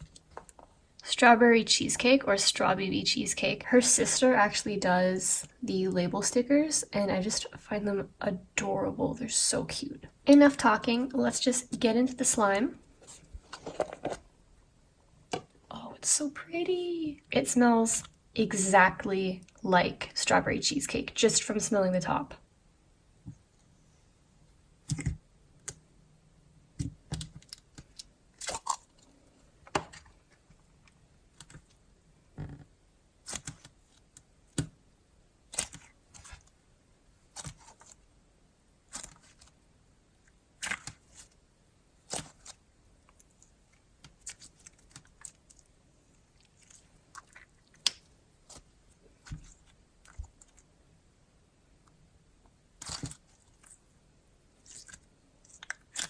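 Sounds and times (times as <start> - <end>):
slime squishing with clicks and pops: 40.3 - 41.2, 46.4 - 50.7, 52.4 - 53.8, 54.6 - 56.0.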